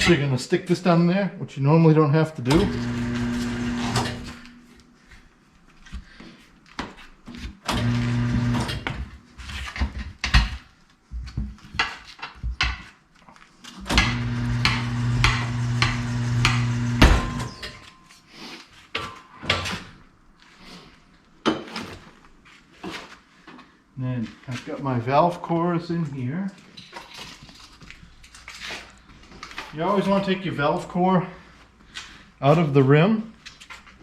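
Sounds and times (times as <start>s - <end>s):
turntable motor humming: 2.5s - 4.6s, 14.0s - 17.6s.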